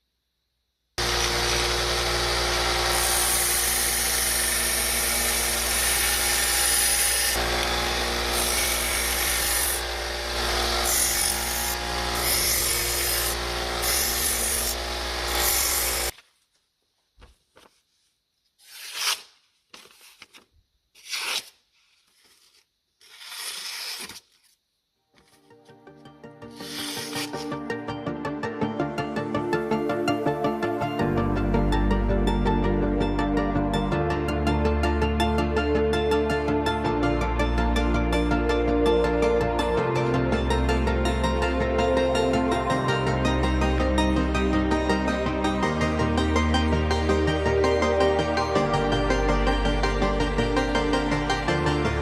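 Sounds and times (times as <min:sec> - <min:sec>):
power tool motor grinding: 0:01.0 - 0:16.2, 0:26.6 - 0:27.5.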